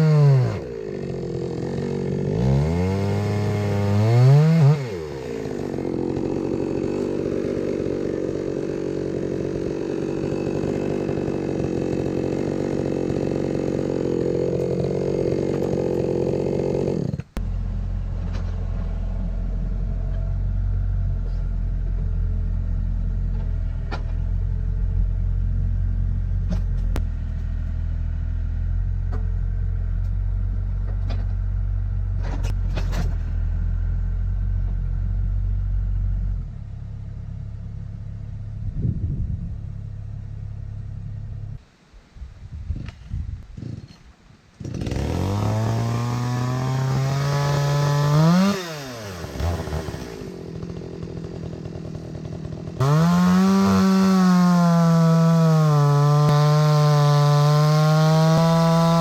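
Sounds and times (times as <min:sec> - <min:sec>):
chainsaw running: 0:00.0 - 0:21.1, 0:44.6 - 0:59.0
deep engine rumble: 0:17.3 - 0:41.6.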